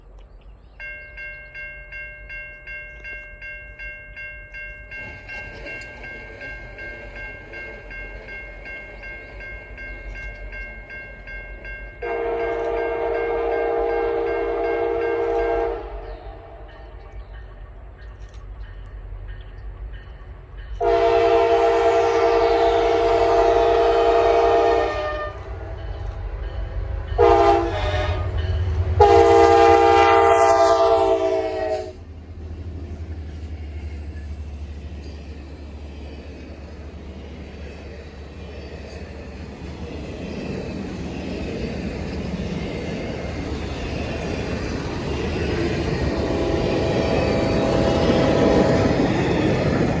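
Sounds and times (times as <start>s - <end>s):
diesel train rumbling past: 0.0s - 50.0s
train air horn blasts: 12.0s - 16.6s, 20.8s - 25.8s, 27.2s - 32.0s, 46.1s - 49.0s.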